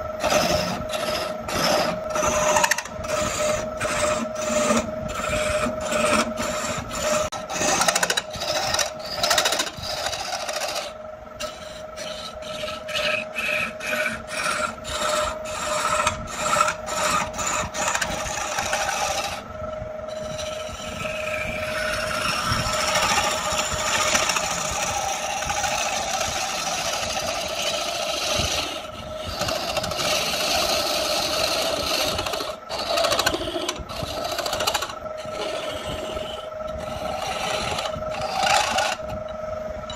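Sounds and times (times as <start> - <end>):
wood being rasped by hand: 0.0 - 19.4, 20.1 - 39.1
steady high hum: 0.0 - 39.9.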